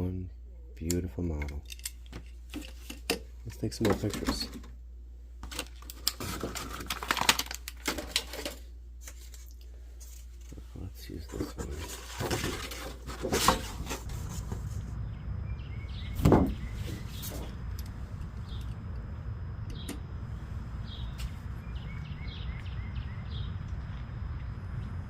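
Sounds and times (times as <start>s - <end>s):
steady low hum: 0.0s - 25.0s
low thump: 16.1s - 16.8s.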